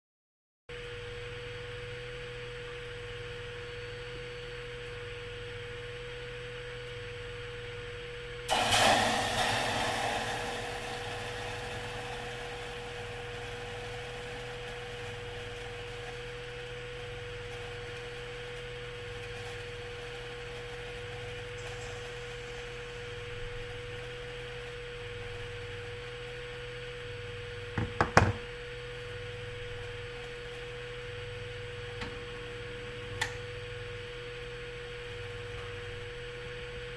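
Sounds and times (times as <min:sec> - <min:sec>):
pulsing electrical hum: 0:00.7 - 0:36.9
water sizzling in a hot pan: 0:08.5 - 0:27.0.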